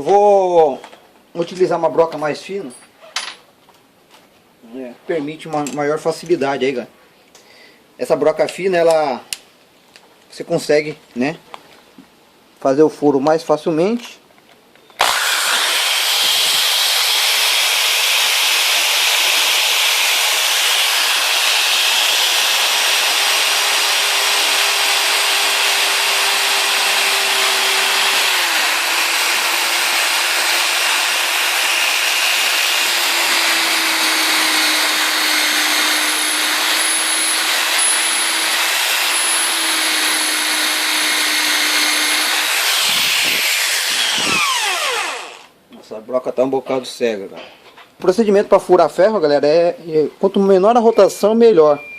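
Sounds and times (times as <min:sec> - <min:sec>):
electric drill boring into metal: 0:15.0 - 0:45.5.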